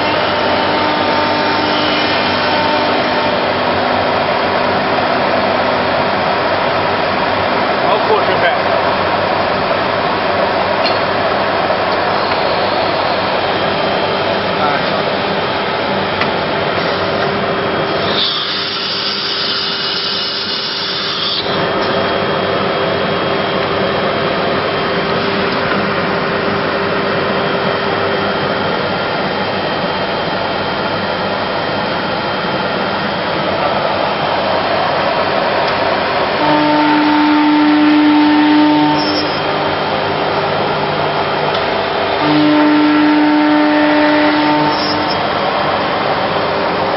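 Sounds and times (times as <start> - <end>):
router spindle cutting wood: 0.0 - 3.6, 17.8 - 22.0, 38.8 - 39.6, 41.8 - 45.4
steady whine: 0.0 - 46.9.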